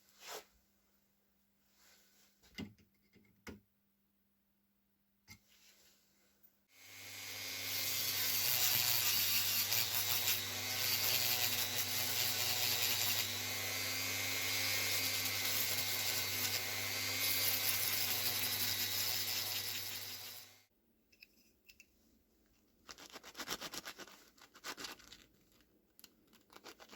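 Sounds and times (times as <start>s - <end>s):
electric power tool grinding: 6.8s - 20.6s.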